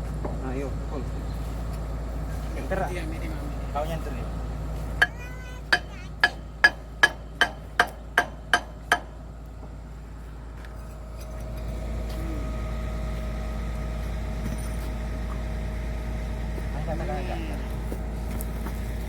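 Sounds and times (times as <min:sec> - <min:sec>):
steady machine drone: 0:00.0 - 0:19.0
hammer striking steel: 0:05.0 - 0:09.2.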